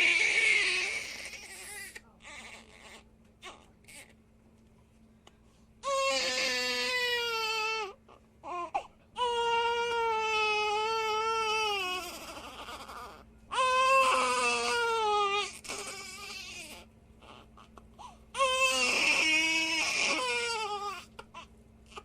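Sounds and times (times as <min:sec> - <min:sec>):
infant crying: 0:00.0 - 0:04.1, 0:05.8 - 0:22.0.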